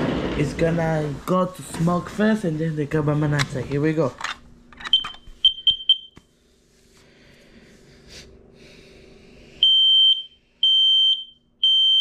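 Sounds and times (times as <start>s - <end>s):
smoke alarm beeps: 4.9s - 6.2s, 9.6s - 12.0s.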